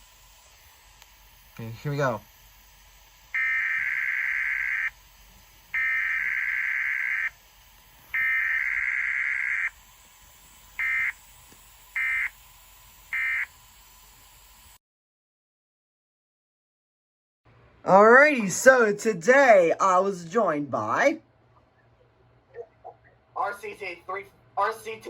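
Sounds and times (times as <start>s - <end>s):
buzzy screechy digital data bursts: 1.5s - 9.9s, 10.5s - 11.2s, 11.8s - 12.4s, 13.1s - 13.6s.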